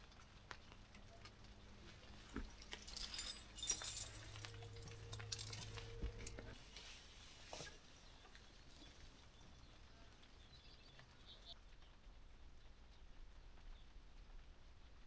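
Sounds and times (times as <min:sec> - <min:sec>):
metallic jingling and clinking: 0:02.6 - 0:06.5.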